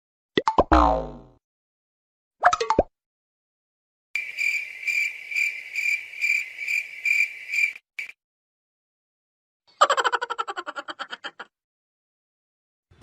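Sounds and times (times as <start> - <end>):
cricket chirping: 4.2 - 8.2.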